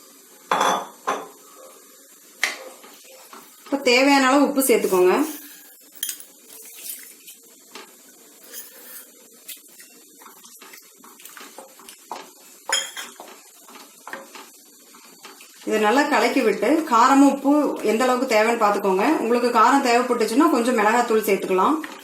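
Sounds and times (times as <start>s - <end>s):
spoon clinking on metal pot: 12.7s - 13.2s.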